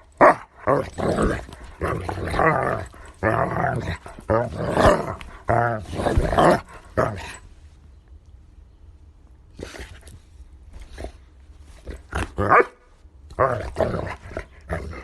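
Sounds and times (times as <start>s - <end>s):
dog barking and growling: 0.0s - 7.4s, 11.8s - 15.0s.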